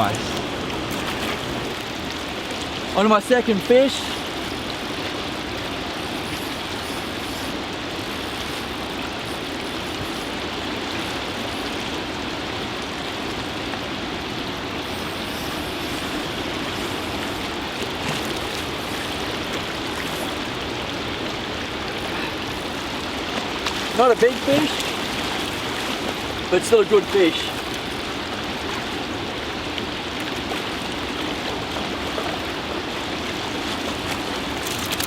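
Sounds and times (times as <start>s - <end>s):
flood water rushing: 0.0s - 35.0s.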